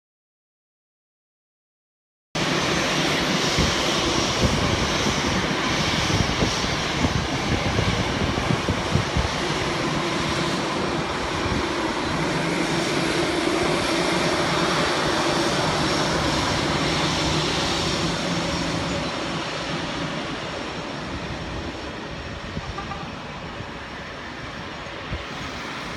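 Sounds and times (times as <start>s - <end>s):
jet engines roaring: 2.4s - 25.9s.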